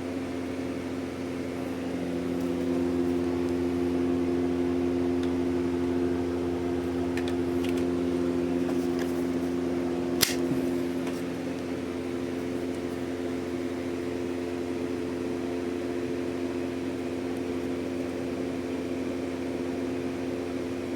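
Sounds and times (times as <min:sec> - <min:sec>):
polishing machine humming: 0:01.4 - 0:15.7
sharp click: 0:10.2 - 0:10.5.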